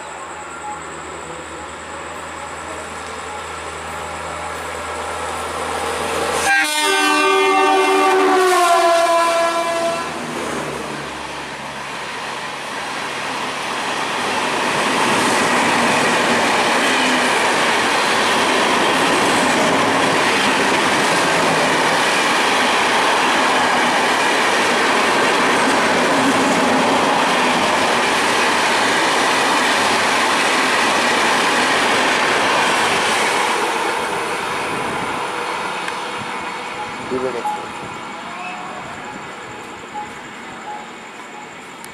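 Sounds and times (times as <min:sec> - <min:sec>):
train wheels rushing on rails: 0:01.0 - 0:41.9
train horn: 0:06.3 - 0:10.3.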